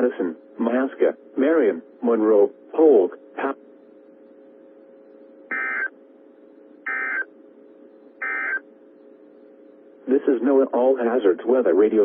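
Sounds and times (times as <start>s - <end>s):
faint steady hum: 0.0s - 12.0s
buzzy data squawks: 5.5s - 5.9s, 6.8s - 7.3s, 8.2s - 8.6s.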